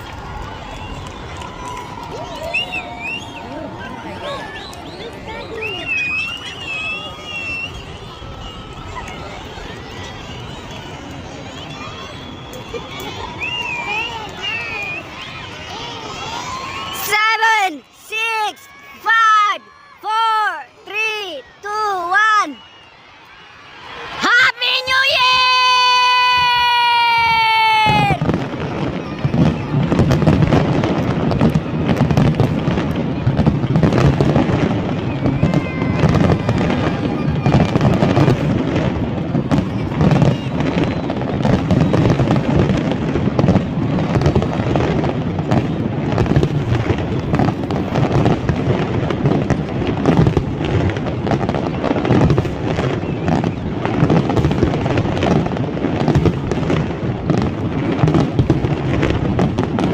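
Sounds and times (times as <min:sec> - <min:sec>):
fireworks crackling: 0:00.0 - 0:59.9.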